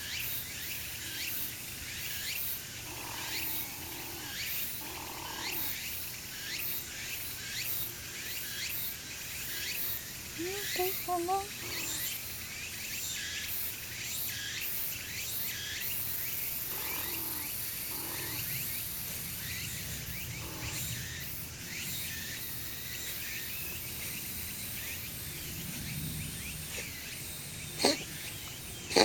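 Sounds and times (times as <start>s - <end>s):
steady outdoor hiss: 0.0s - 29.0s
cat sneezing: 27.8s - 28.3s.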